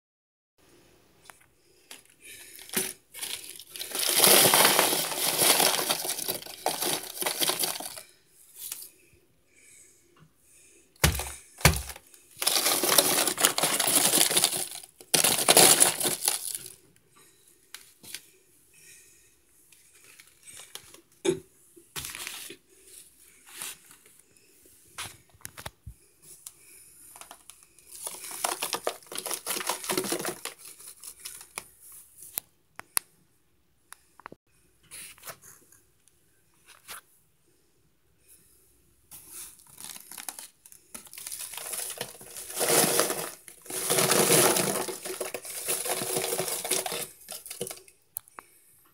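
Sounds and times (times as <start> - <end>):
plastic packaging crinkling: 1.9 - 8.0, 11.0 - 16.8, 27.1 - 31.7, 39.6 - 47.9.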